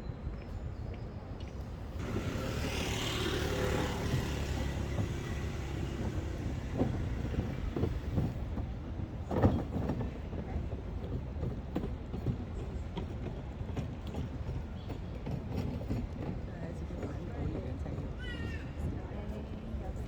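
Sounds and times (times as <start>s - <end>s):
vehicle passing: 2.0s - 8.4s.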